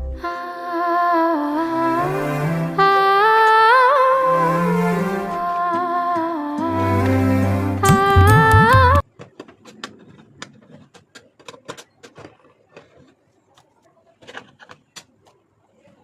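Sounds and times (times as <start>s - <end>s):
song with singing: 0.0s - 9.0s.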